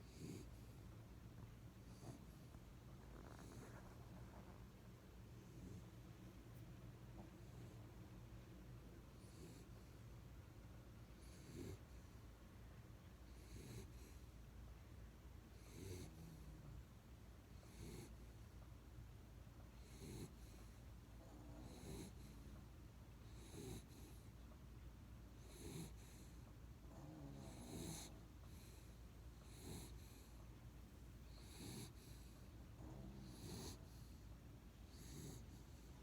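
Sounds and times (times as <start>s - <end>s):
pet snoring: 0.0s - 0.8s, 1.8s - 4.6s, 5.4s - 6.0s, 9.1s - 9.9s, 11.1s - 12.2s, 13.3s - 14.3s, 15.5s - 16.8s, 17.5s - 18.4s, 19.8s - 22.6s, 23.3s - 24.3s, 25.4s - 30.4s, 31.2s - 34.3s, 34.9s - 36.0s.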